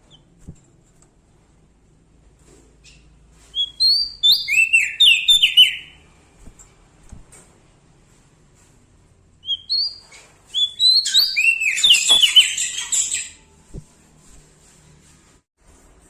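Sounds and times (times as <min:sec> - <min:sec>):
songbird chirps: 0:02.8 - 0:07.3, 0:09.4 - 0:14.4.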